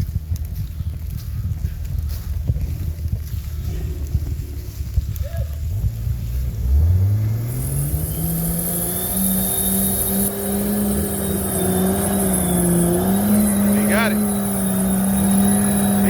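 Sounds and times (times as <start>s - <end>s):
vehicle engine revving hard: 6.0s - 16.0s.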